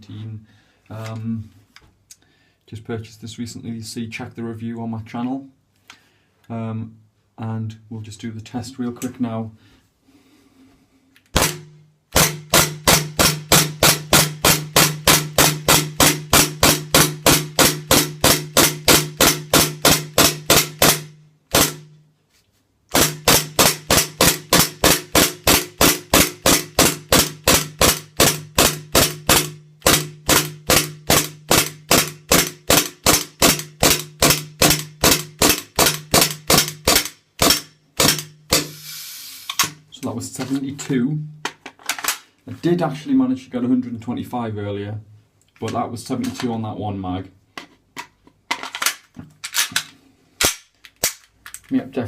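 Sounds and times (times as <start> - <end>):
airsoft pistol shots: 11.4 - 21.9, 22.9 - 38.8.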